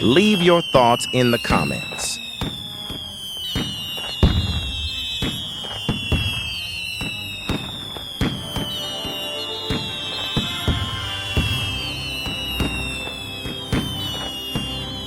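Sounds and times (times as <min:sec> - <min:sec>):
sharp pops and bangs: 0:01.9 - 0:15.0.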